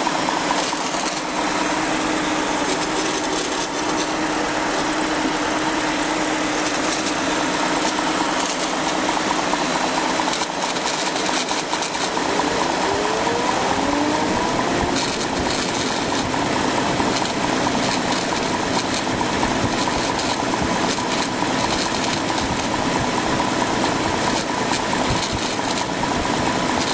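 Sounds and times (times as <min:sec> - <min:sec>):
car engine running: 0:00.0 - 0:26.9
engine whine: 0:00.0 - 0:26.9
rising whines: 0:00.8 - 0:10.3, 0:11.5 - 0:17.2.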